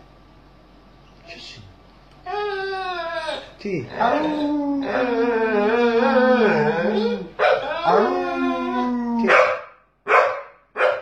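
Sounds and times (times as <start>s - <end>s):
dog moaning vocalisations: 2.2s - 9.3s.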